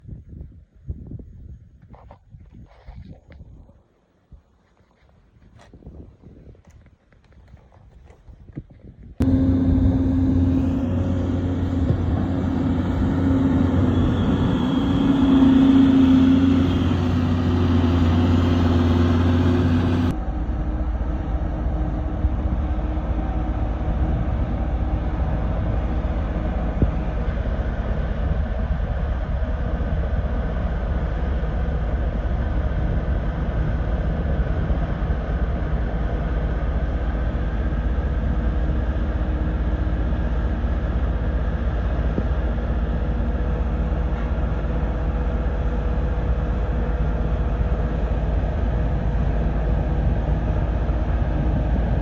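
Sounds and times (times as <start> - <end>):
heavy machinery engine rumble: 9.2 - 52.0.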